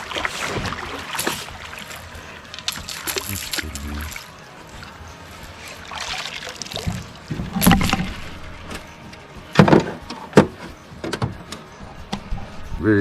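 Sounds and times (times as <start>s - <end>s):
faint water sounds: 0.0s - 9.5s
knocks and thuds against boat: 6.9s - 8.8s.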